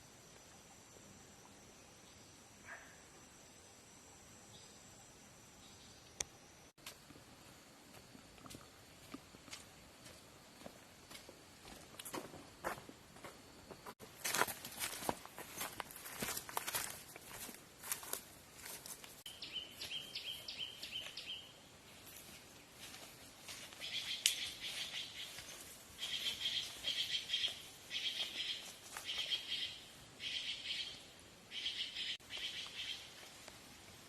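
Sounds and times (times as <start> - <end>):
bird chirping: 19.3 - 21.6, 23.8 - 33.1.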